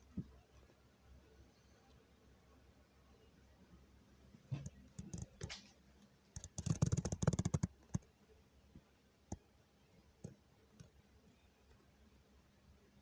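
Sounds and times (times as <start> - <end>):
sharp clicks: 6.4 - 8.1.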